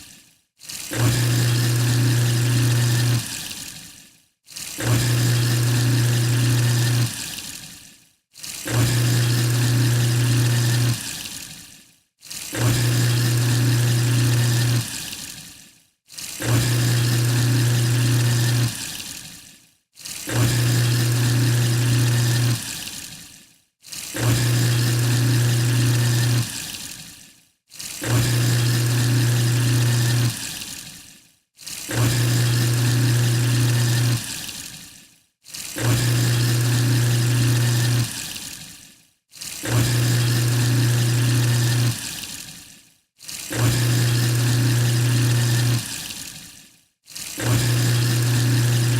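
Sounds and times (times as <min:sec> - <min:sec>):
garbage disposal motor hum: 0:00.9 - 0:03.3, 0:04.8 - 0:07.2, 0:08.7 - 0:11.1, 0:12.6 - 0:14.9, 0:16.4 - 0:18.8, 0:20.3 - 0:22.6, 0:24.2 - 0:26.6, 0:28.0 - 0:30.4, 0:31.9 - 0:34.3, 0:35.8 - 0:38.2, 0:39.6 - 0:42.1, 0:43.5 - 0:46.0, 0:47.4 - 0:48.9.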